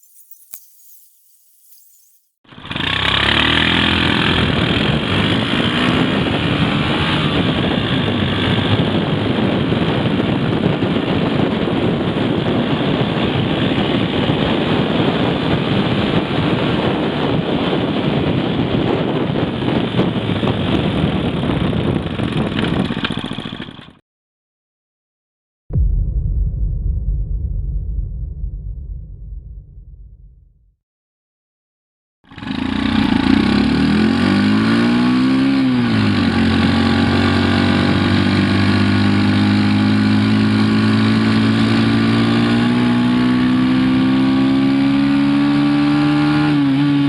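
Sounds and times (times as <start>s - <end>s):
motorcycle engine running: 2.5s - 24.0s, 32.3s - 44.0s.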